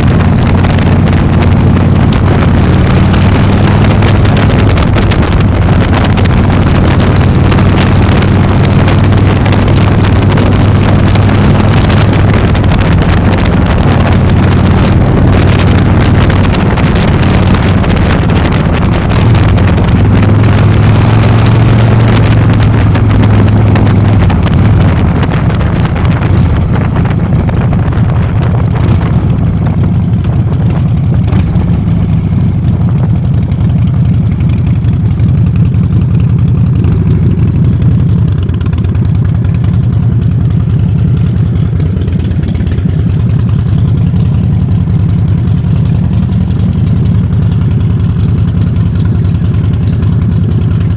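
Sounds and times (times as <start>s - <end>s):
wind rushing over microphone: 0.0s - 33.3s
scooter engine running: 0.0s - 50.9s.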